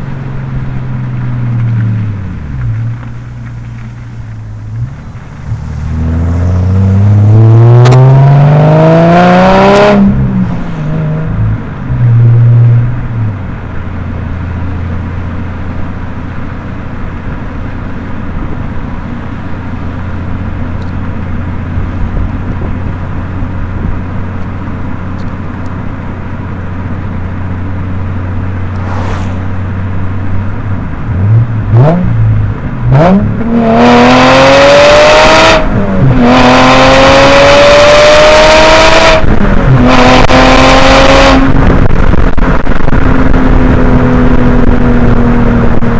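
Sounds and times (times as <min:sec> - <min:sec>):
car engine revving and accelerating: 0:00.7 - 0:15.0, 0:28.4 - 0:45.9
wind noise on microphone: 0:21.7 - 0:24.1, 0:30.4 - 0:45.9.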